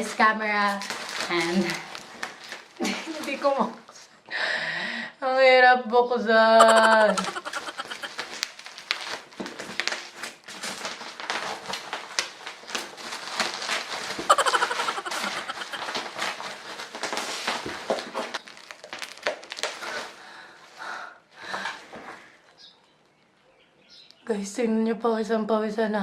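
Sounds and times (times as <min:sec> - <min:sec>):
packaging crinkling: 0:00.7 - 0:03.4, 0:07.3 - 0:20.2.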